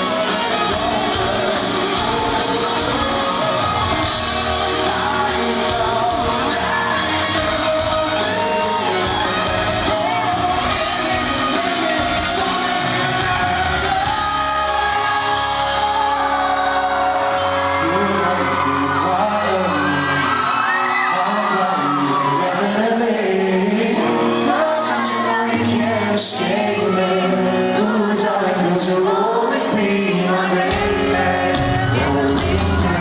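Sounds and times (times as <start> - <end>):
live rock band playing: 0.0 - 33.0
man singing: 0.0 - 33.0.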